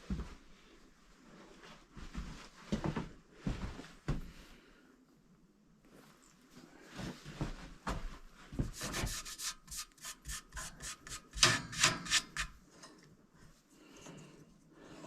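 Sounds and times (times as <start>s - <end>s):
scrapes and knocks: 8.6s - 13.1s
rhythmic scraping strokes: 8.7s - 12.6s.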